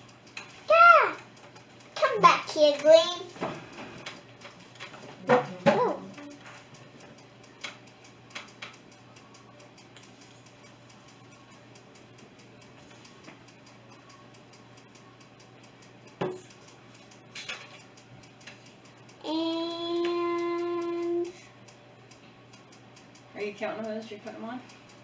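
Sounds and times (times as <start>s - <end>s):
faint hum: 5.5s - 25.0s.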